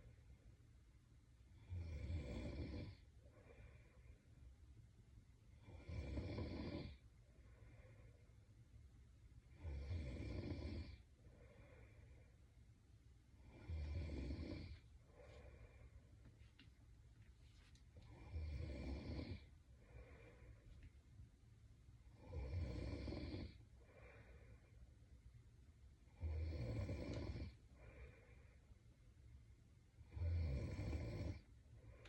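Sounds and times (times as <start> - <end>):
woman snoring: 1.6 - 3.7, 5.6 - 7.0, 9.5 - 11.0, 13.4 - 14.8, 18.1 - 20.4, 22.1 - 24.3, 26.2 - 28.2, 30.0 - 31.5
soft breath: 2.4 - 4.8, 6.8 - 8.9, 10.8 - 21.3, 22.9 - 25.3, 27.1 - 29.1, 31.3 - 32.0.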